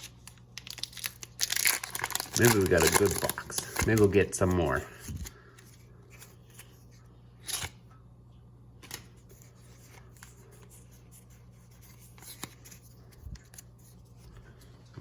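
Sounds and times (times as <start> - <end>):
foil wrapper crinkling: 0.0 - 5.4
faint steady hum: 0.0 - 15.0.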